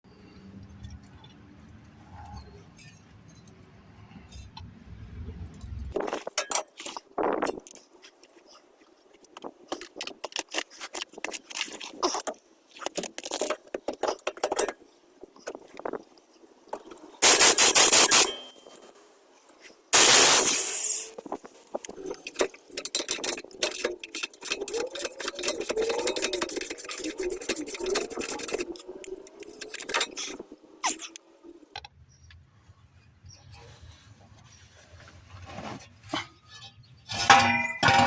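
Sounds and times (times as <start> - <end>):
metal tools clinking and scraping: 6.0 - 19.0, 20.0 - 31.2, 36.0 - 38.0
loud hissing bursts: 17.2 - 18.3, 20.0 - 21.2.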